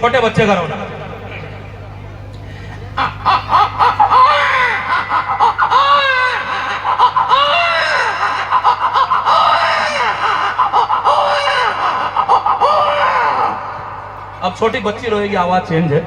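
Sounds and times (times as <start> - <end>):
audience laughing: 0.4 - 16.0
audience clapping: 3.0 - 11.7
man imitating baby crying: 3.3 - 13.8.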